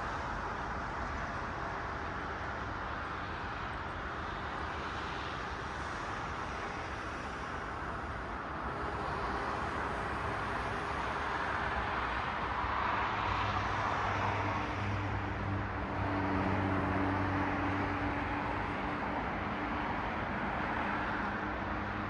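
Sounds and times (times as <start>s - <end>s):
cars passing on street: 0.0s - 22.0s.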